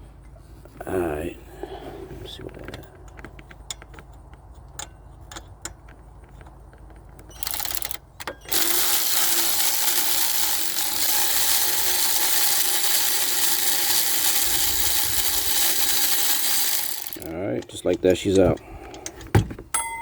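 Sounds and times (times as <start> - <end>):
electric ratchet spinning: 7.3 - 17.4.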